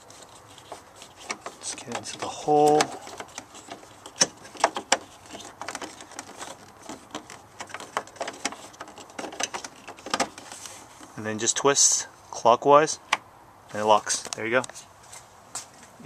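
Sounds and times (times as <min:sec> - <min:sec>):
plastic clicks and scraping: 0:00.0 - 0:11.2.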